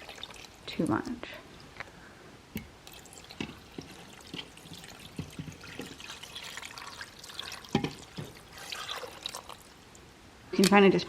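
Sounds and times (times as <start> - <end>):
water trickling: 0.0 - 1.8, 2.6 - 10.1
water splashing: 2.8 - 9.9.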